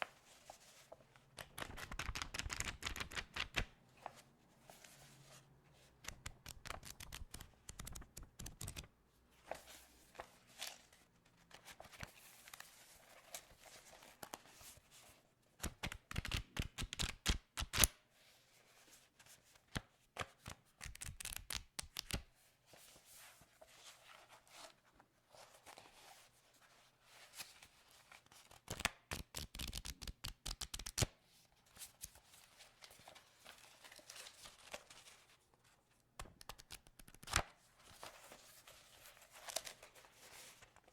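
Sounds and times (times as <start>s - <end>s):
paper crinkling and rustling: 31.7s - 40.9s.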